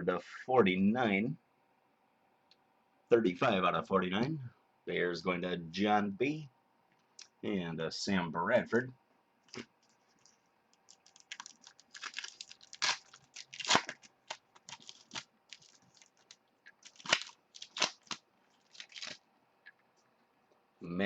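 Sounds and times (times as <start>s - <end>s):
card wrappers crinkling and tearing: 9.5s - 19.2s.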